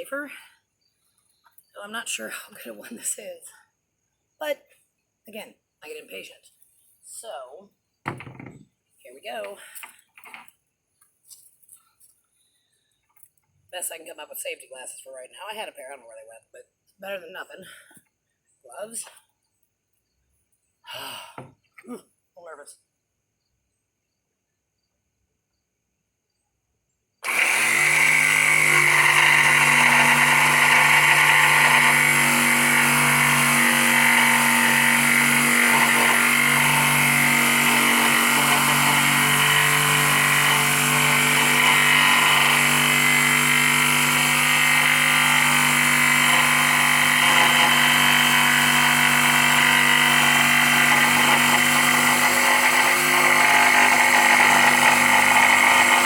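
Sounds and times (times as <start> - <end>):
electric jigsaw cutting: 27.2 - 56.0.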